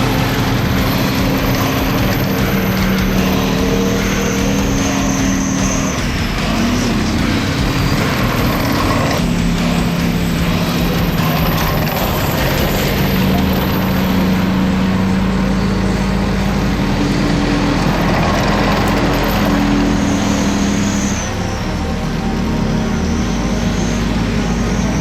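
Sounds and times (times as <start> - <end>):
tank engines droning: 0.0 - 25.0.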